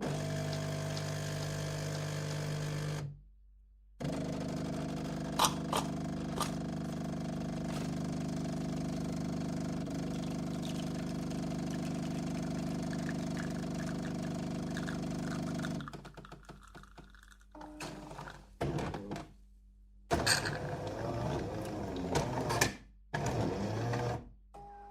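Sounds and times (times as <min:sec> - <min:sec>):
coffee machine motor humming: 0:00.0 - 0:03.1, 0:04.0 - 0:16.0.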